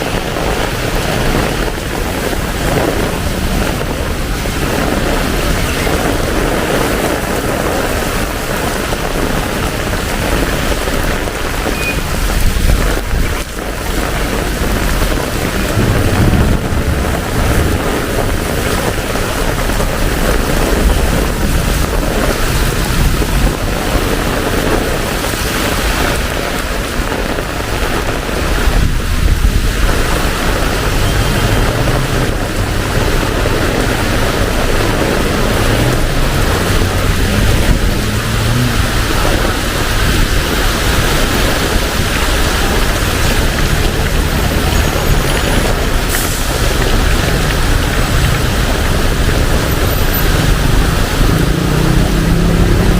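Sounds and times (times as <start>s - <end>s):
heavy rain hissing: 0.0s - 52.9s
low rumble: 12.1s - 24.2s, 28.7s - 52.9s.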